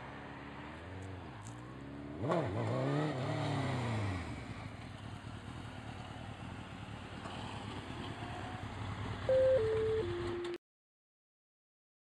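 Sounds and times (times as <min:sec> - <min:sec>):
motorcycle engine idling: 0:04.4 - 0:10.3
short descending beeps: 0:09.3 - 0:10.6.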